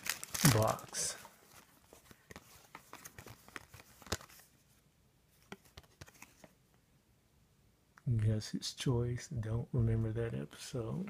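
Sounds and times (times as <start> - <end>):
trading cards clicking and rustling: 0.0 - 4.5, 5.4 - 6.5.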